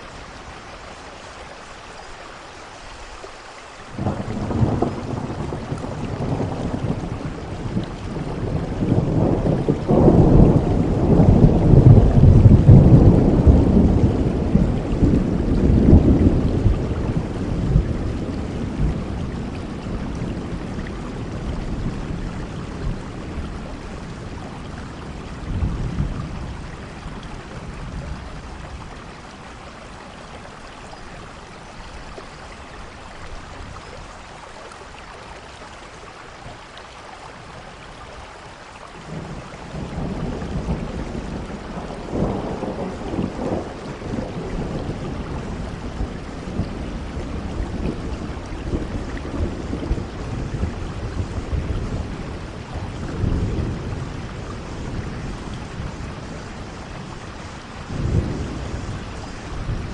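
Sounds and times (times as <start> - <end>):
steady rain: 0.0 - 59.9
thunder rumbling: 4.0 - 30.5, 39.0 - 59.9.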